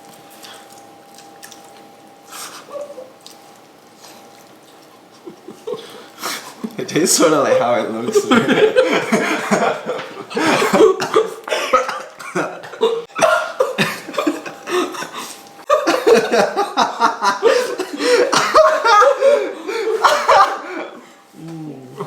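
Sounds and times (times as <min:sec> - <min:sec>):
people laughing: 0:05.1 - 0:21.0
people coughing: 0:08.0 - 0:21.1.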